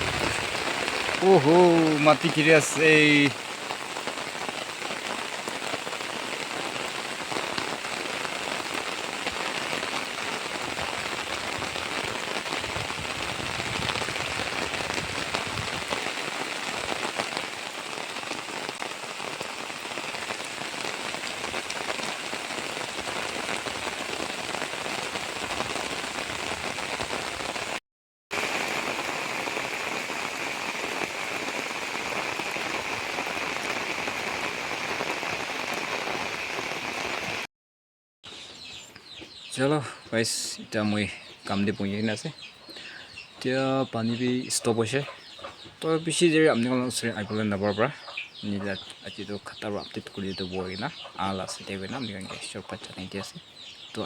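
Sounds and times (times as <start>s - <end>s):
steady rain falling: 0.0s - 37.5s, 40.8s - 54.0s.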